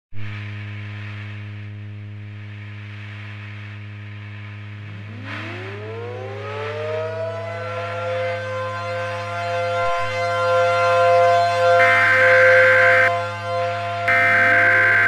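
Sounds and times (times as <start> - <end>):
civil defense siren wailing: 5.5 - 15.0
steady low hum: 11.8 - 13.1, 14.1 - 15.0.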